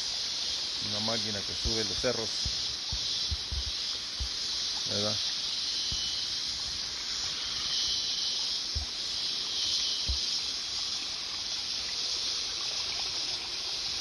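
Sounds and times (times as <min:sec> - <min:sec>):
cicadas droning: 0:00.0 - 0:14.0
low thumps: 0:01.6 - 0:04.4.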